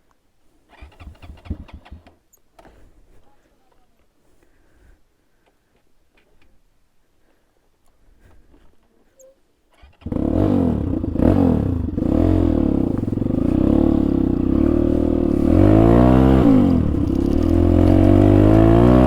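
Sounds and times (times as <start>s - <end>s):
motorcycle engine revving: 0.7s - 2.1s, 9.8s - 19.0s.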